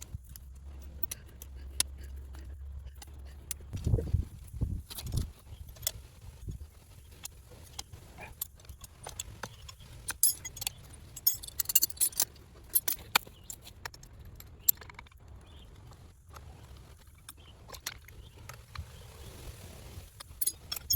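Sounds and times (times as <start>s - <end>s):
metal tools clinking and rattling: 7.7s - 15.2s, 20.2s - 20.9s.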